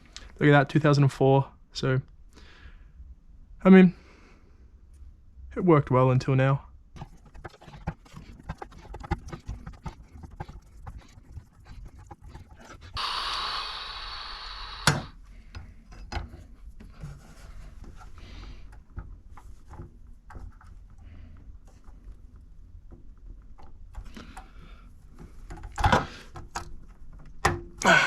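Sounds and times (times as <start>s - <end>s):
hiss: 12.9s - 15.1s.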